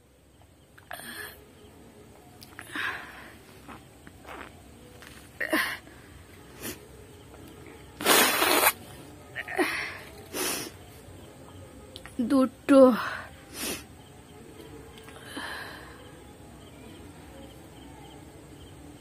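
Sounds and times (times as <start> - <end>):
breathy sounds: 2.5 - 3.8, 15.0 - 16.2.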